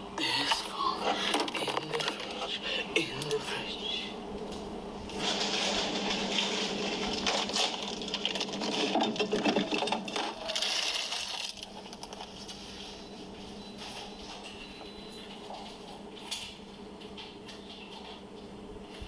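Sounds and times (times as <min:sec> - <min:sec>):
containers clinking in fridge: 0:00.5 - 0:02.5, 0:05.2 - 0:12.6.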